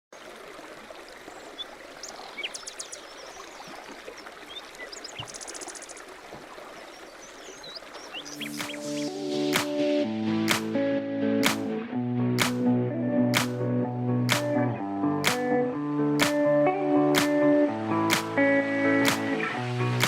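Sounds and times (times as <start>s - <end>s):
stream water rushing: 0.1s - 10.7s
small birds chirping: 1.0s - 9.2s.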